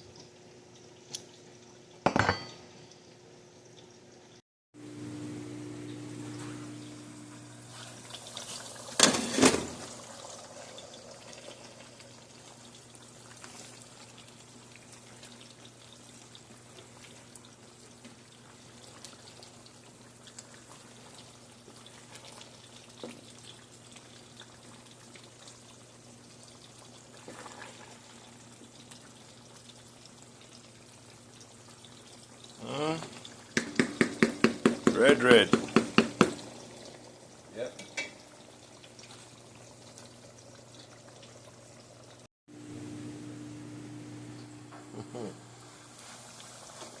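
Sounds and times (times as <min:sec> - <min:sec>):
liquid trickling: 0:05.8 - 0:42.3.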